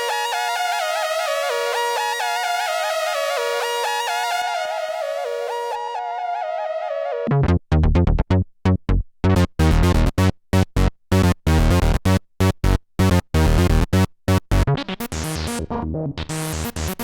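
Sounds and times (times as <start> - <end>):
short deep chopped synth notes: 7.3 - 17.0.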